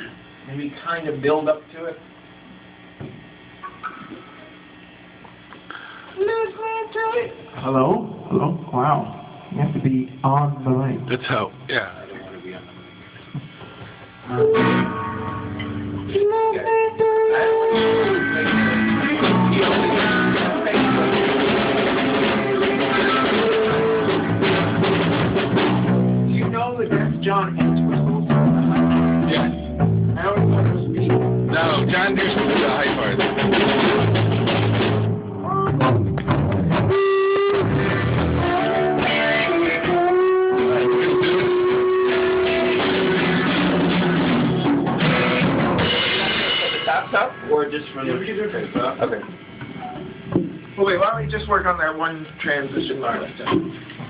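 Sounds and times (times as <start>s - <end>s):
drums: 0.0s - 54.0s
electric guitars: 10.8s - 54.0s
rock band playing: 14.3s - 47.5s.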